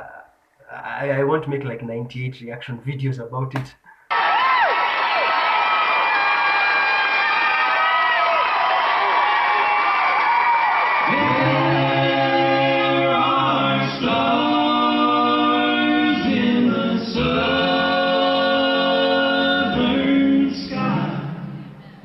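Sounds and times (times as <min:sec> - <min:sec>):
male a cappella group singing: 0:11.1 - 0:21.6.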